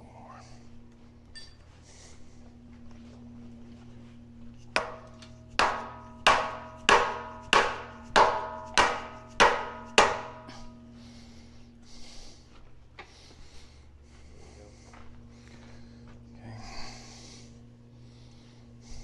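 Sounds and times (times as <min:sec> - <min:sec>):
hammer blows on steel: 0:04.7 - 0:11.0.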